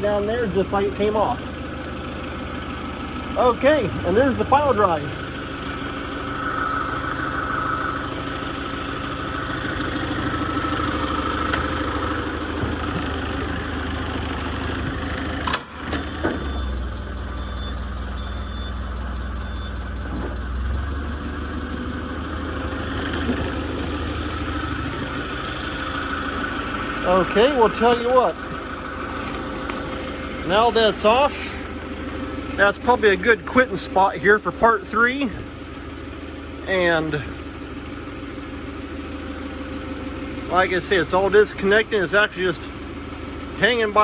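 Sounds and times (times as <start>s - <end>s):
forklift engine idling: 0.0s - 44.0s
backup alarm beeping: 4.4s - 10.6s, 16.4s - 20.1s.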